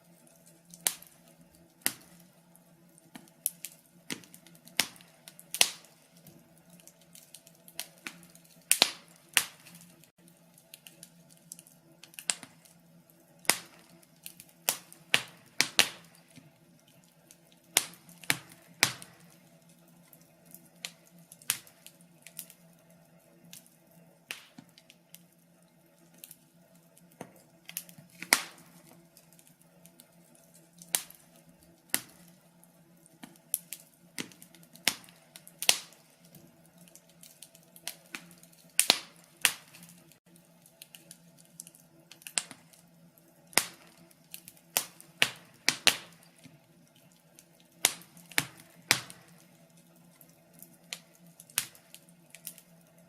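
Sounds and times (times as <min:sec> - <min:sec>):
wood fire crackling and popping: 0:00.0 - 0:53.0.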